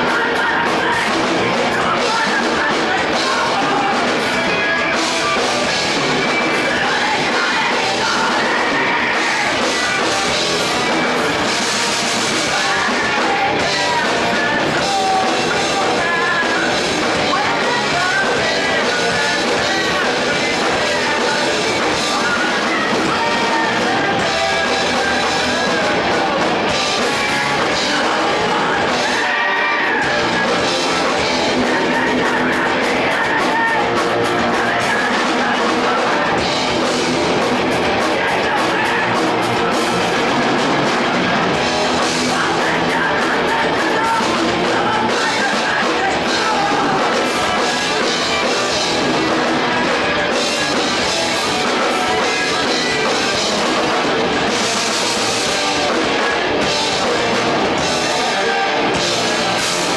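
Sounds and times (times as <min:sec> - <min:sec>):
rock band playing live: 0:00.0 - 0:59.9
shouted vocals: 0:00.0 - 0:59.9.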